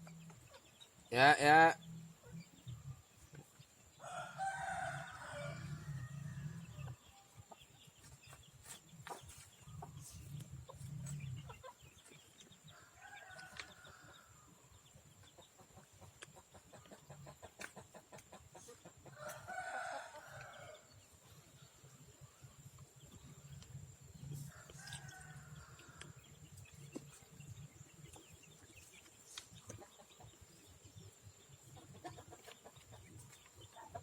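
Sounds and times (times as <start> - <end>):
chickens clucking: 0.0 - 3.9, 6.6 - 20.6, 22.4 - 34.0
rooster crowing: 4.0 - 6.8, 19.2 - 20.8.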